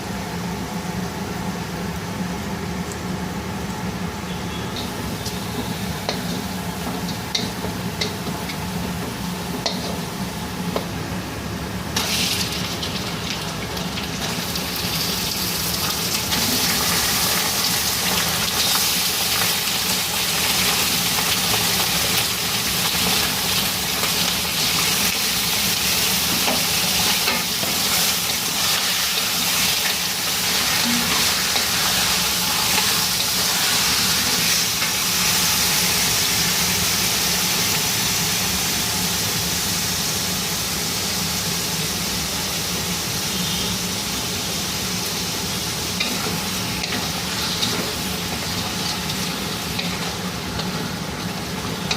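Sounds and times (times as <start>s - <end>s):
food sizzling in hot oil: 1.0s - 51.9s.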